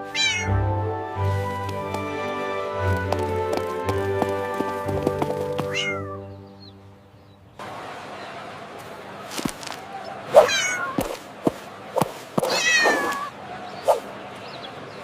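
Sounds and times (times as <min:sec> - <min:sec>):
cat meowing: 0:00.1 - 0:00.5, 0:05.7 - 0:06.2, 0:10.4 - 0:11.0, 0:12.5 - 0:13.3.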